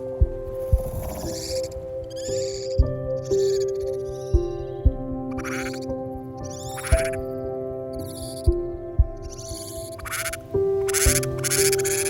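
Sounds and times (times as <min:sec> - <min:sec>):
background music sustained notes: 0:00.0 - 0:12.0
harsh raspy bird calls: 0:05.4 - 0:05.8.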